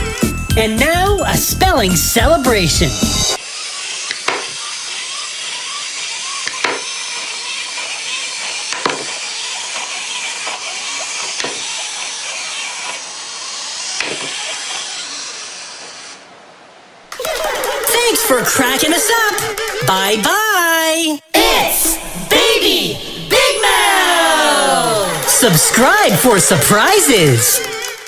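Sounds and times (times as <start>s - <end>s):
steady hissing: 3.3s - 16.8s
sharp pops: 4.1s - 4.6s, 6.4s - 7.0s, 7.8s - 11.8s.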